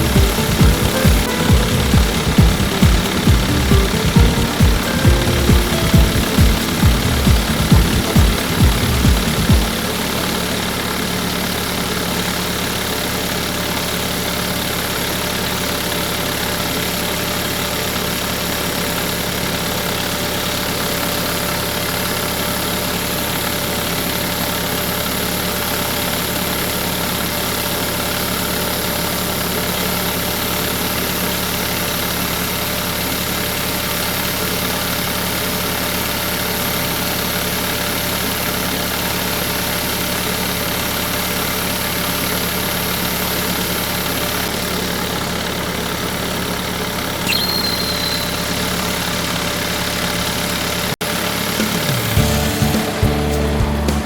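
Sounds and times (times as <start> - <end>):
air conditioner running: 0.0 - 12.4
truck engine idling: 0.0 - 25.5, 30.4 - 54.0.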